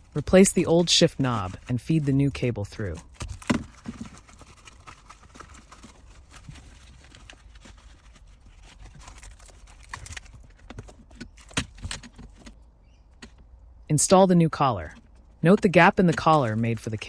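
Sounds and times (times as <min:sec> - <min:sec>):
plastic parts clicking and knocking: 0:03.0 - 0:13.5.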